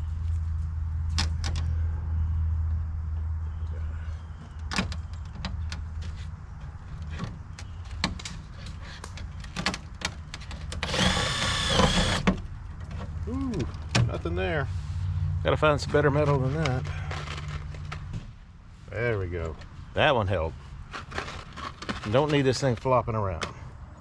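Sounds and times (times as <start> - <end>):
power driver motor humming: 10.8 - 12.2.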